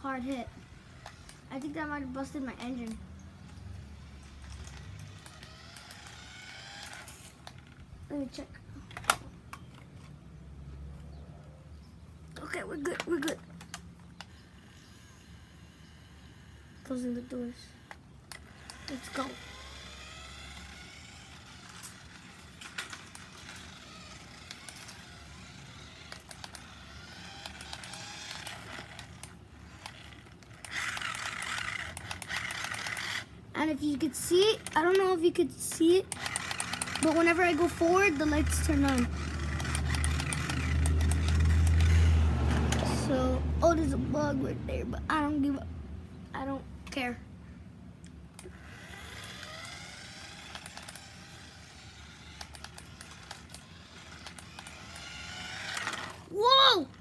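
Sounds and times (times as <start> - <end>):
toy car motor whirring: 0.0 - 45.6, 48.0 - 57.0
scattered clicks: 0.2 - 10.2, 12.3 - 14.4, 17.9 - 43.1, 48.0 - 56.3.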